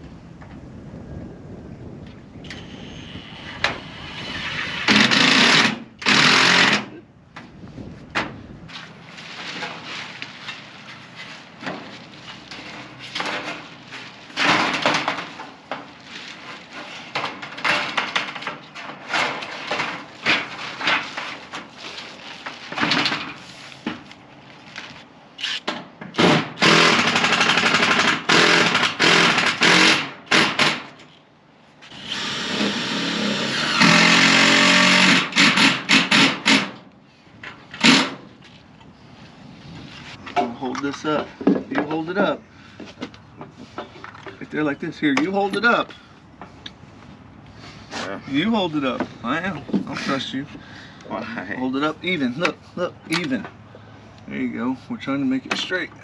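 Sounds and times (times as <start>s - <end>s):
screw gun driving into sheet metal: 3.6s - 6.9s, 25.4s - 31.0s, 31.9s - 36.8s.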